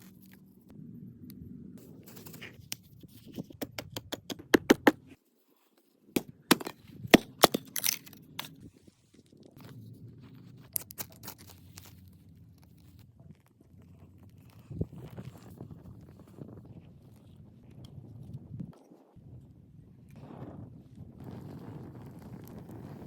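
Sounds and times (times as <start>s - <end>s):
campfire crackling and popping: 21.2s - 23.0s.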